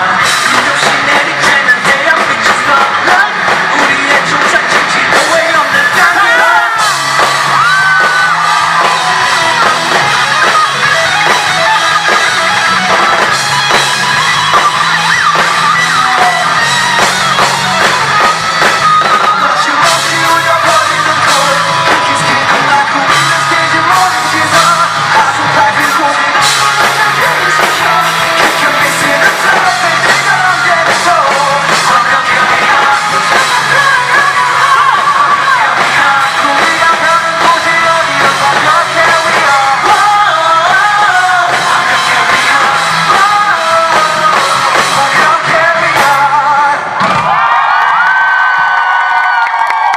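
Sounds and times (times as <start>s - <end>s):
rock band playing live: 0.0s - 49.9s
singer's lead vocal: 0.0s - 49.9s
people yelling and whooping: 5.1s - 37.0s, 47.0s - 49.9s.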